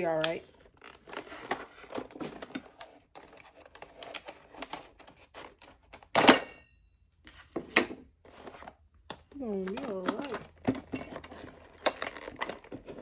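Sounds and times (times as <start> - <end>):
tools clicking and scraping: 8.3 - 13.0.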